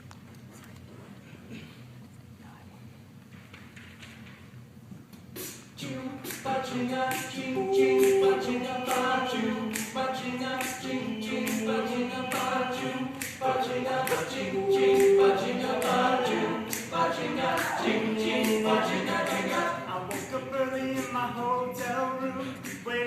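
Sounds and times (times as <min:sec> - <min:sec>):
vocal harmonies: 0:05.4 - 0:23.0
vocal percussion beat: 0:05.4 - 0:23.0.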